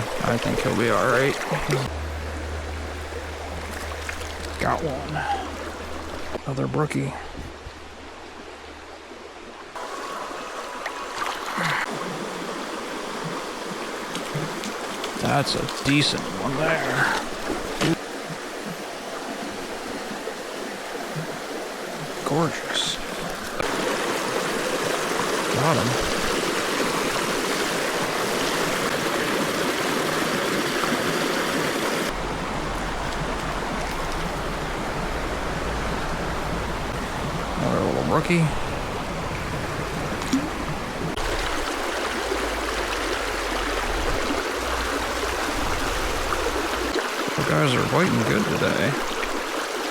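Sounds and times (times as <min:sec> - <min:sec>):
creek water rushing over rocks: 0:00.0 - 0:49.9
low rumble: 0:01.9 - 0:04.6, 0:42.3 - 0:46.9.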